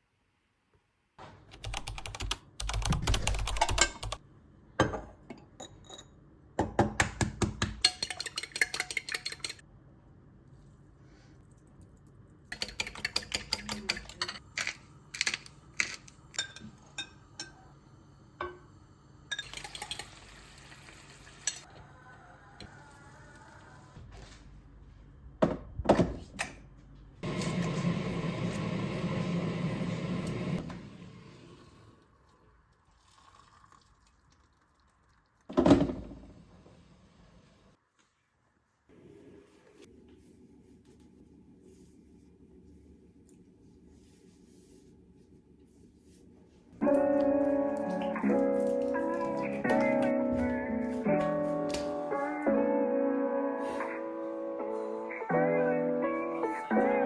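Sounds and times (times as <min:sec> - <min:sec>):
dishes and utensils clinking: 0:04.8 - 0:06.2, 0:07.8 - 0:09.6, 0:12.5 - 0:17.6, 0:21.3 - 0:21.7.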